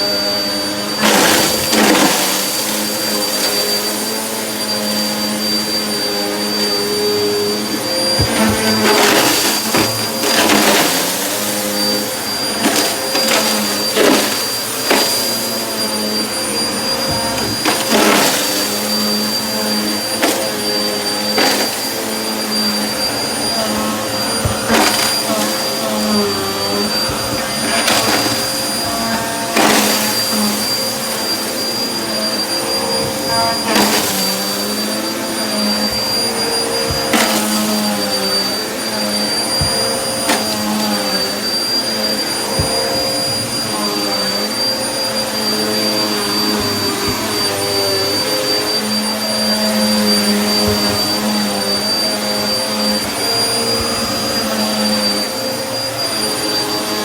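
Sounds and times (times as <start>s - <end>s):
vacuum cleaner whining: 0.0s - 57.0s
vacuum crunching debris: 1.0s - 3.4s, 8.0s - 15.6s, 16.5s - 31.2s.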